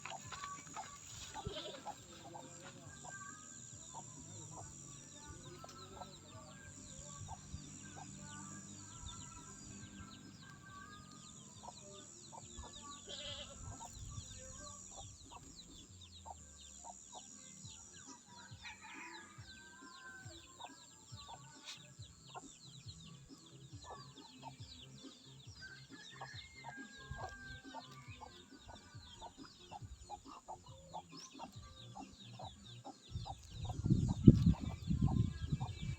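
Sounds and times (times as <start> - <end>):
chickens clucking: 0.0 - 3.3, 26.6 - 35.9
farm animals: 0.0 - 35.9.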